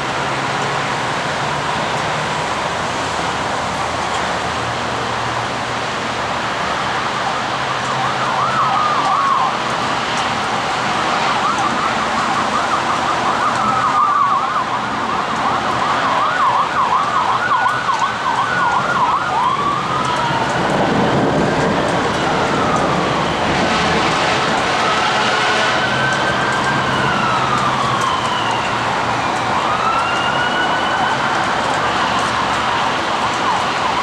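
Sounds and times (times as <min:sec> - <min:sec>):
traffic: 0:00.0 - 0:34.0
siren wailing and yelping: 0:07.0 - 0:09.7, 0:11.2 - 0:24.9, 0:25.7 - 0:34.0.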